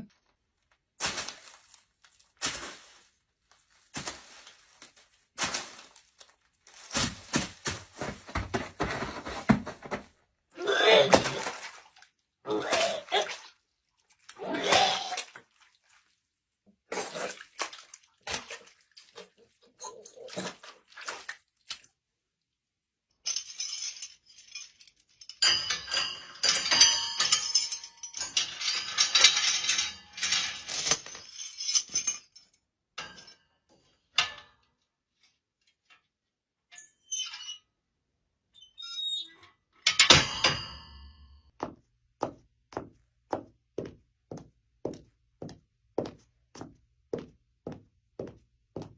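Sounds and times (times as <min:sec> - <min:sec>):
knocks and rustles: 0:03.8 - 0:10.2
dense clattering and clinking: 0:06.8 - 0:10.1, 0:25.4 - 0:32.4.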